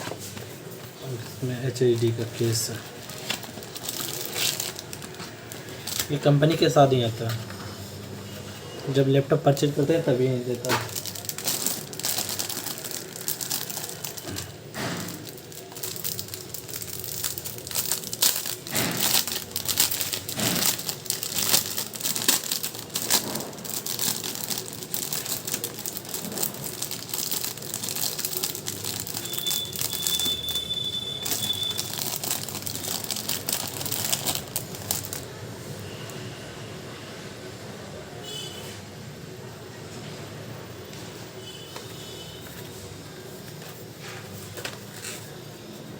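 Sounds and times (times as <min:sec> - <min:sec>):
plastic packaging crinkling: 0:00.0 - 0:07.5, 0:08.3 - 0:36.2.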